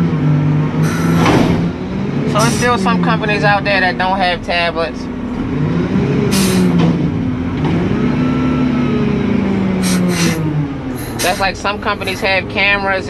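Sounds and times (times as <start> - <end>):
truck engine from inside cab: 0.0 - 13.0
short air hisses: 0.8 - 1.4, 6.3 - 6.8, 9.8 - 11.5.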